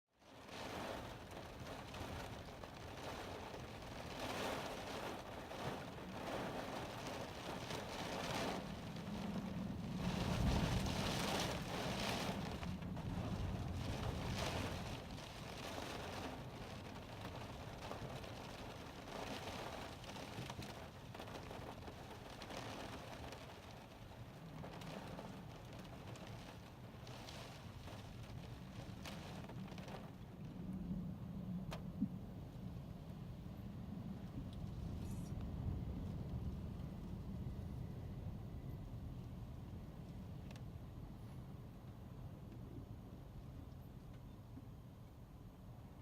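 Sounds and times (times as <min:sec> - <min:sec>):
driving rain: 0:00.2 - 0:46.0
storm wind gusting: 0:00.5 - 0:17.6, 0:28.6 - 0:40.1.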